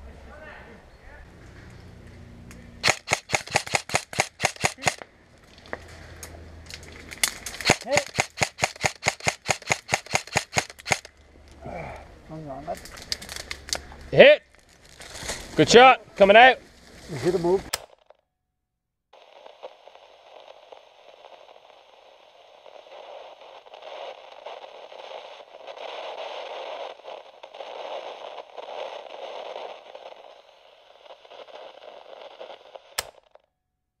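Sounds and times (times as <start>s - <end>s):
radio static hiss with crackle: 19.2s - 33.0s.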